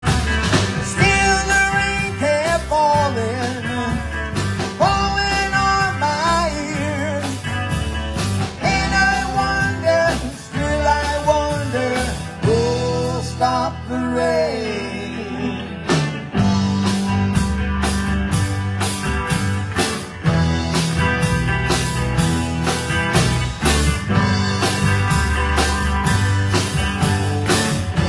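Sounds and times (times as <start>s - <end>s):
electric guitar melodic lines: 0.0s - 28.0s
live rock band playing: 0.0s - 28.0s.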